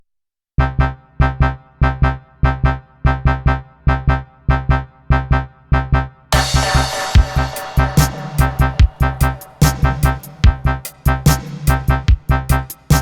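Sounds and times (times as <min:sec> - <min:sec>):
pitched chord stabs: 0:06.3 - 0:12.1
drums and cymbals beat: 0:06.4 - 0:13.0.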